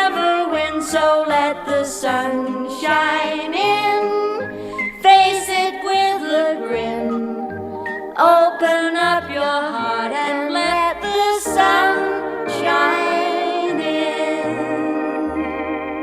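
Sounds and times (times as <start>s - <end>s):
pop song voices singing with band: 8.2s - 15.3s.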